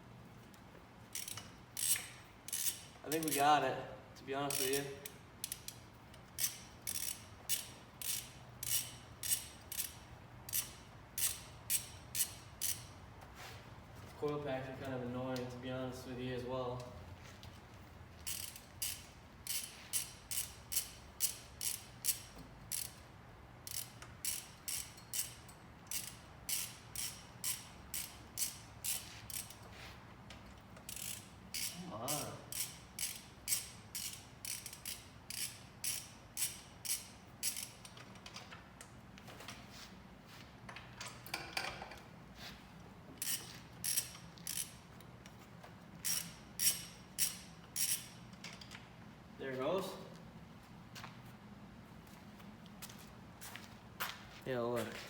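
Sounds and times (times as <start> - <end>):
hand ratchet clicking: 1.1 - 3.5, 4.5 - 12.9, 18.2 - 23.0, 23.6 - 29.7, 30.8 - 38.2, 43.2 - 44.8, 46.0 - 48.6.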